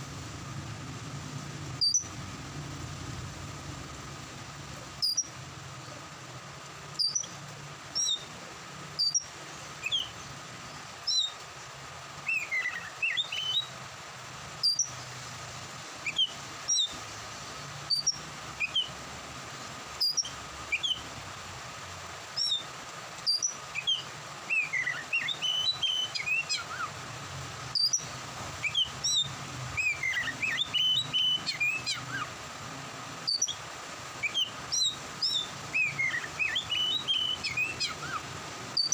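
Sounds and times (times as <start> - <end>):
rain hiss: 0.0 - 38.9
bird singing whistled notes: 1.8 - 2.2, 5.0 - 5.4, 6.9 - 8.3, 9.0 - 11.4, 12.2 - 13.8, 14.6 - 15.0, 16.0 - 17.0, 17.9 - 19.0, 20.0 - 21.0, 22.4 - 26.9, 27.7 - 32.3, 33.3 - 33.6, 34.2 - 38.9.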